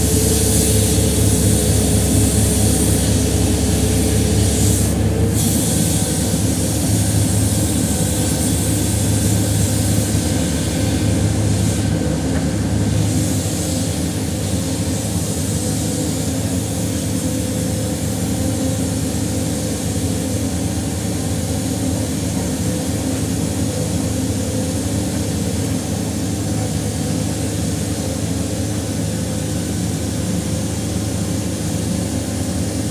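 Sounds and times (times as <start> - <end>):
truck engine droning: 0.0 - 15.6.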